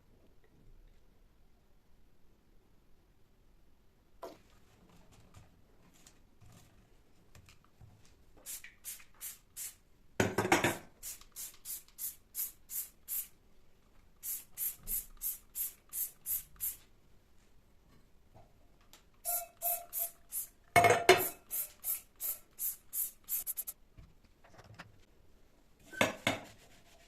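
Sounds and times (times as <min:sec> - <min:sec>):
trigger spray bottle squirting: 0:11.0 - 0:13.3, 0:14.2 - 0:16.8, 0:19.3 - 0:20.5, 0:21.2 - 0:23.8.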